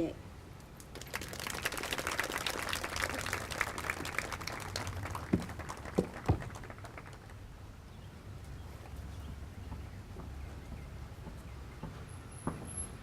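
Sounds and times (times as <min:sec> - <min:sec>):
audience applause: 0:00.9 - 0:07.4.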